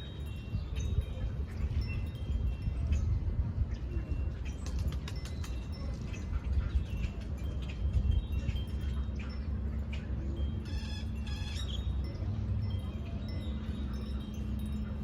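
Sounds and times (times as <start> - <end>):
high whistled bird calls: 8.2 - 12.1.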